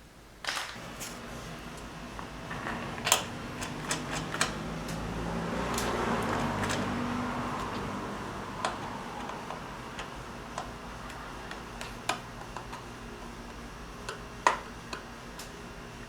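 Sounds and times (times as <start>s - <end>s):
hand tools clicking and tapping: 2.2s - 12.9s.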